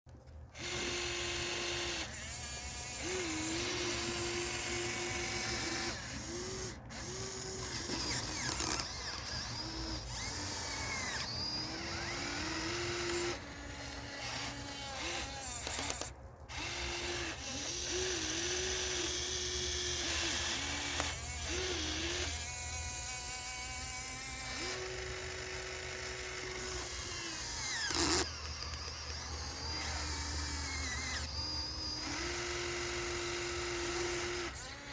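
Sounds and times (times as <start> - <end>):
electric gear motors whining: 0.1 - 34.9.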